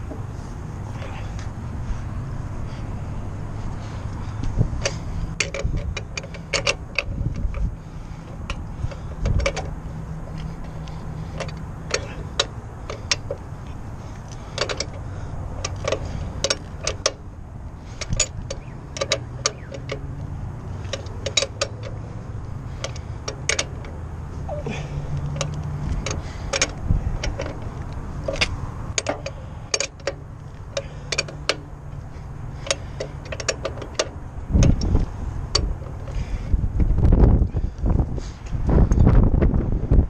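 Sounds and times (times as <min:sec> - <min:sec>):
steady low hum: 0:00.0 - 0:40.0
metal tool rods clinking: 0:04.8 - 0:17.2, 0:17.8 - 0:36.4.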